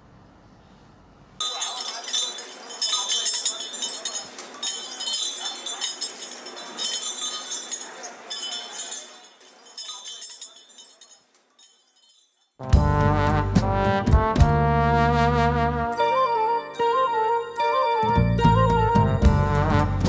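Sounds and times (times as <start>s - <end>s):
metallic clinking and jingling: 1.4s - 12.7s.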